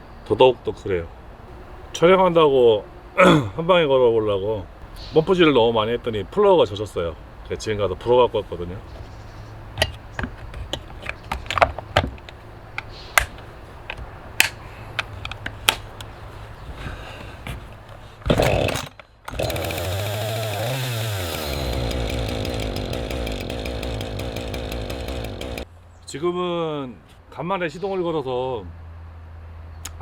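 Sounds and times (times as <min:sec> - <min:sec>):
handling clicks and knocks: 0:09.7 - 0:16.2
chainsaw pull-starting: 0:18.3 - 0:25.7
chainsaw idling: 0:19.3 - 0:25.7.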